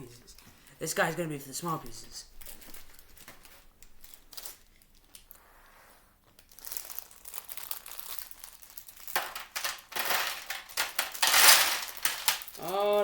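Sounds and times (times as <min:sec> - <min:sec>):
plastic bags crinkling: 0:02.1 - 0:05.4, 0:06.2 - 0:13.0
plastic pieces rattling into a tray: 0:08.6 - 0:13.0.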